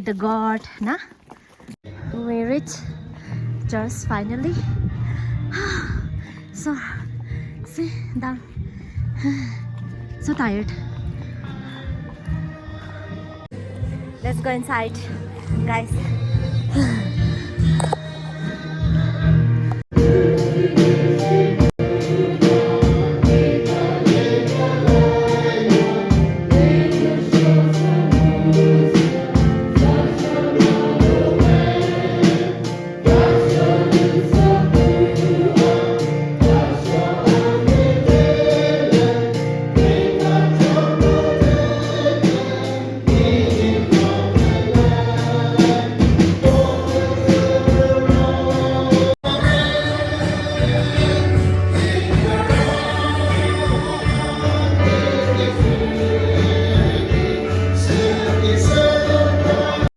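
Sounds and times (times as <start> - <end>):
choir singing gospel song: 11.4 - 59.9
instrumental accompaniment with beat: 17.6 - 59.9.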